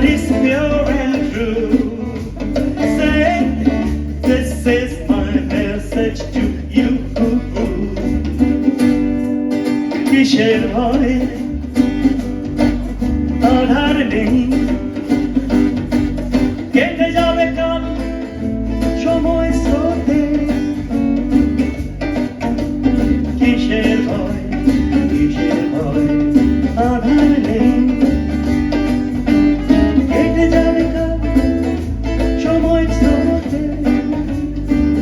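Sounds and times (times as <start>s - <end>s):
bass line: 0.0s - 35.0s
live reggae band: 0.0s - 35.0s
strummed guitar: 0.0s - 35.0s.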